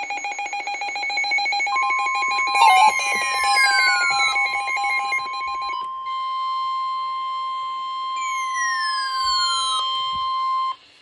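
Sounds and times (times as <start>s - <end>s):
steady alarm tone: 0.0s - 10.8s.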